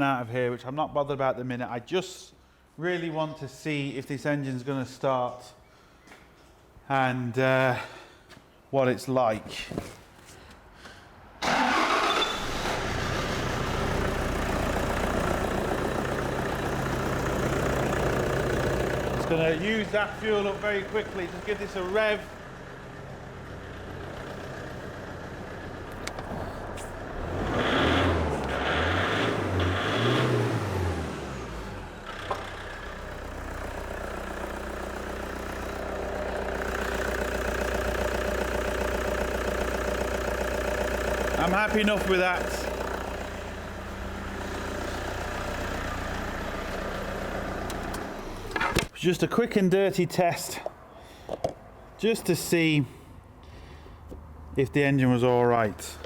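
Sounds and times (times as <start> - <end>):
diesel engine starting and idling: 11.3 - 49.2.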